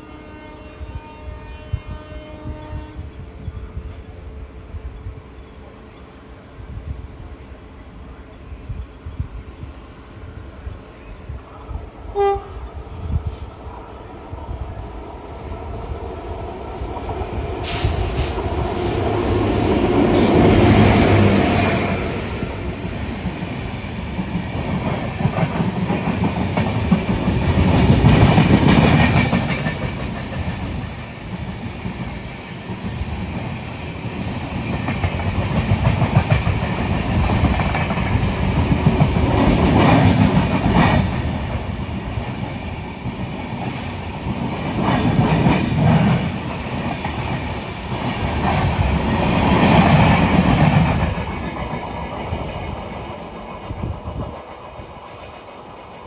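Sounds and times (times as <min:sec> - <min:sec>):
train wheels clattering on rails: 0:16.8 - 0:56.0.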